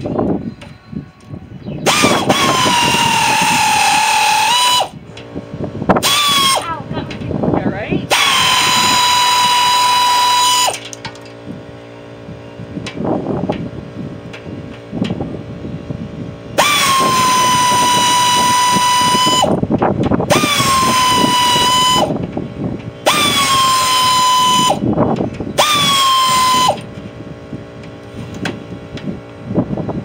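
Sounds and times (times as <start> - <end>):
power tool whining: 1.8 - 29.9.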